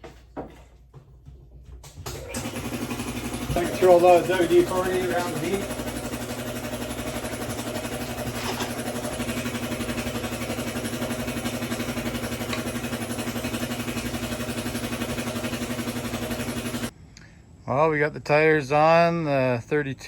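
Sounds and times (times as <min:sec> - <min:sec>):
air compressor running: 0:01.9 - 0:16.9.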